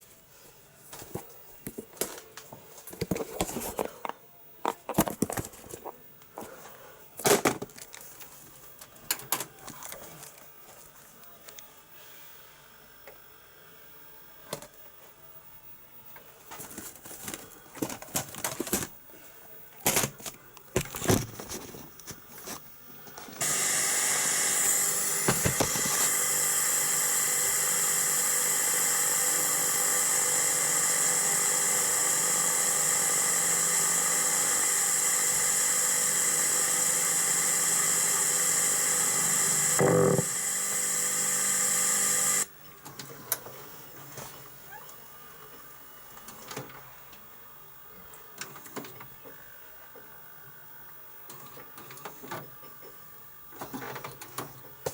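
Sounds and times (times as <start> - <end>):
loud steady electronic buzz: 23.4 - 42.5.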